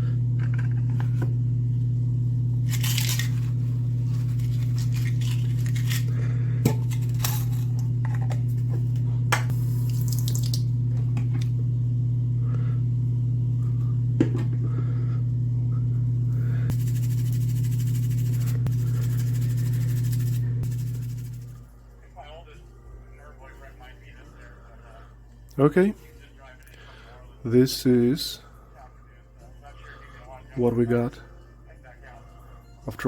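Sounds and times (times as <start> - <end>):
steady low hum: 0.0 - 32.8
hissing and scrubbing: 16.7 - 21.6.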